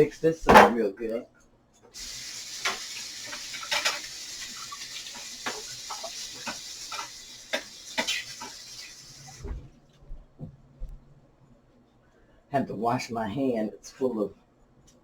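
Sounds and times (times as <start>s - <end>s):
kitchen tap running: 2.0s - 9.6s.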